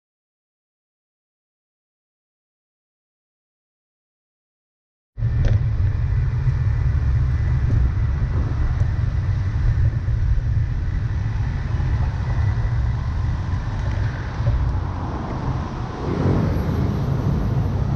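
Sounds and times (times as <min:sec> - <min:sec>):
cars passing: 0:05.2 - 0:17.9.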